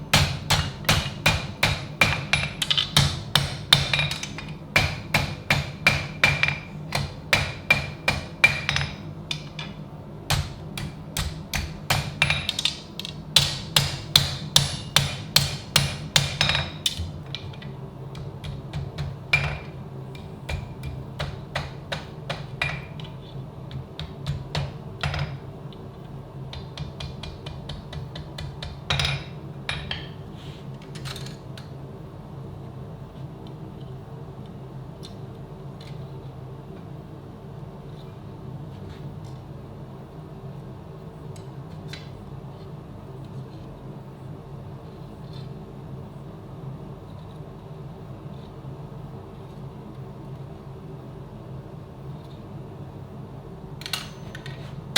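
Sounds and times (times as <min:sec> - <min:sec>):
steady low hum: 0:00.0 - 0:54.9
hammer striking steel: 0:00.1 - 0:17.0.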